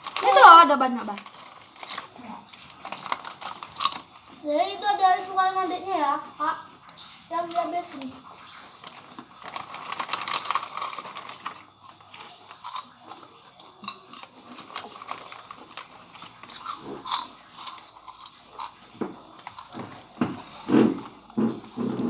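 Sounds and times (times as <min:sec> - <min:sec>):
person chewing crunchy snack: 0:01.2 - 0:04.4, 0:07.5 - 0:21.7.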